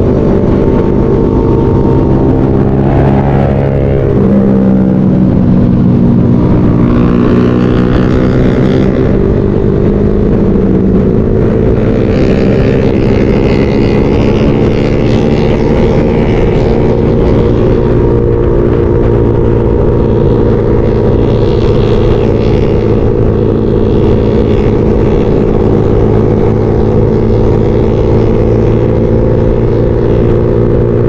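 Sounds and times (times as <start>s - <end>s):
motorcycle engine running: 0.0s - 31.0s.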